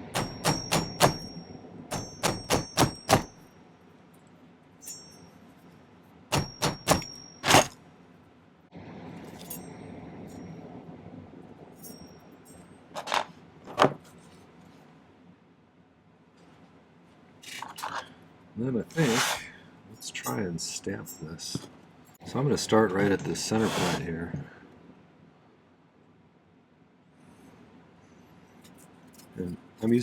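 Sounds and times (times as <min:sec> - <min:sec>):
hammer striking metal wire: 0:00.0 - 0:03.5, 0:04.8 - 0:05.2, 0:06.3 - 0:07.8.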